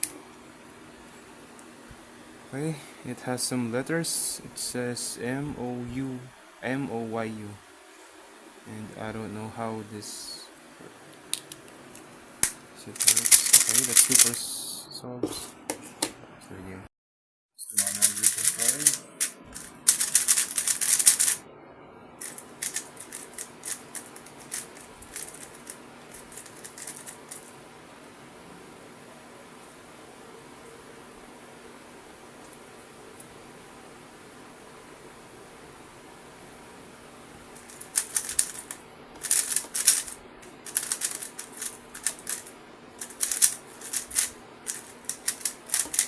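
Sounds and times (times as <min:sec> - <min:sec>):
plastic puzzle cube clicking: 0:19.9 - 0:21.4, 0:22.2 - 0:27.2, 0:37.8 - 0:40.1, 0:40.7 - 0:46.0.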